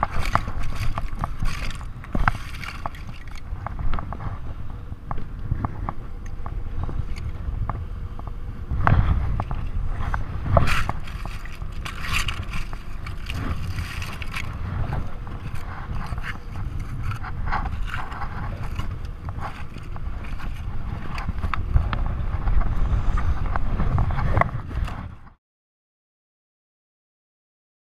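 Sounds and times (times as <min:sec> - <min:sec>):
clicks and scrapes: 0:00.0 - 0:04.4, 0:08.8 - 0:25.4
small boat engine rumble: 0:00.0 - 0:25.4
wind on microphone: 0:00.0 - 0:25.4.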